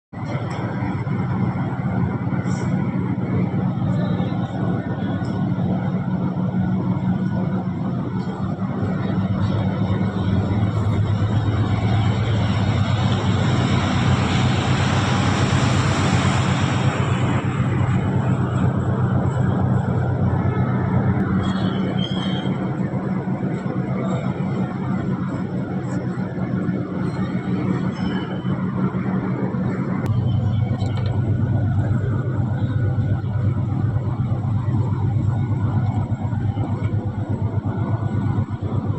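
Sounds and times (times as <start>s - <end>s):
industrial mill drone: 0.0s - 38.9s.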